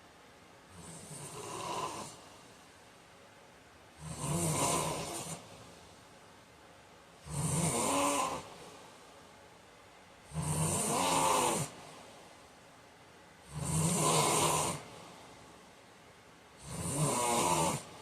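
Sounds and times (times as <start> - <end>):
man snoring: 0.7 - 2.2, 4.0 - 5.4, 7.2 - 8.6, 10.3 - 11.8, 13.4 - 14.9, 16.6 - 17.9.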